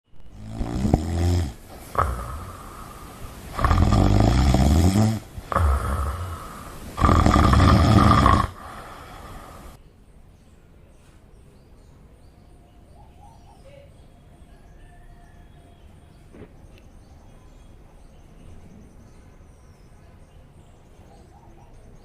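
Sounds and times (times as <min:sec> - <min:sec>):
loud rough snoring: 0:00.3 - 0:09.8.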